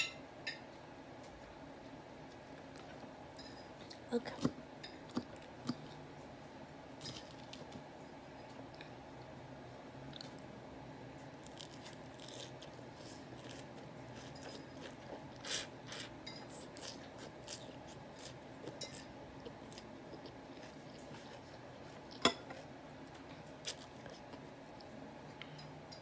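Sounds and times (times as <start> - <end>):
chewing: 11.2 - 25.7.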